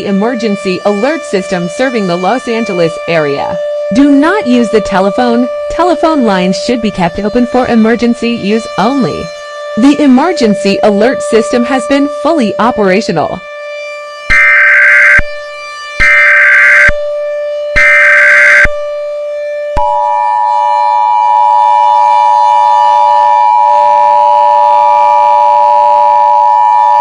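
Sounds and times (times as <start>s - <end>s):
buzzing data bursts: 16.0s - 16.9s, 17.8s - 18.7s
two-tone attention signal: 17.8s - 18.7s.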